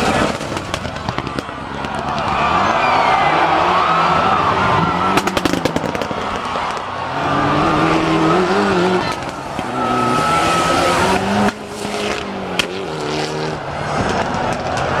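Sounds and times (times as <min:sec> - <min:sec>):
exhaust cracks: 0:00.0 - 0:15.0
car engine revving hard: 0:07.0 - 0:13.8.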